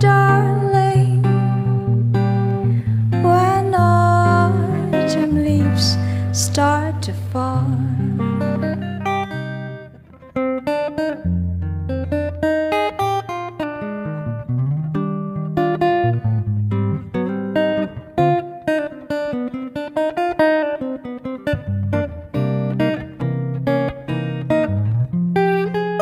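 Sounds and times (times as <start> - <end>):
solo acoustic guitar picking: 0.0 - 26.0.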